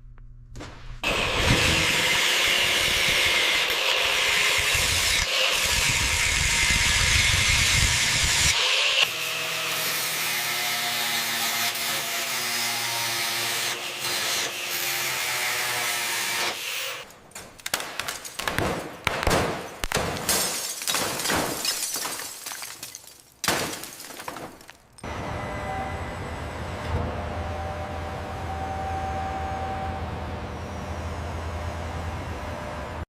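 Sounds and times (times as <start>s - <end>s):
power tool whining: 1.0s - 9.8s.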